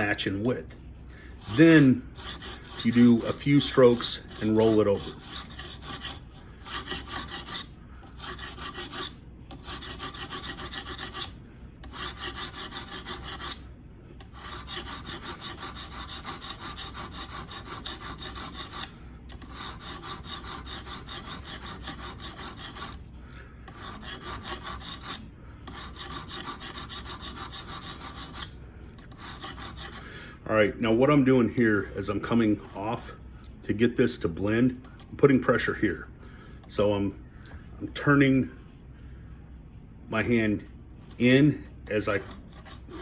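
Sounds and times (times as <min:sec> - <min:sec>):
sharpening stone scraping knife blade: 0:01.4 - 0:13.6, 0:14.2 - 0:23.0.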